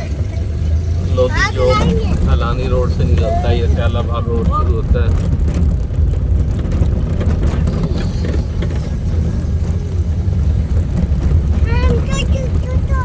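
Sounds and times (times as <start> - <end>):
motorcycle engine rumble: 0.0 - 13.0
road noise: 0.0 - 13.0
wind buffeting microphone: 0.0 - 13.0.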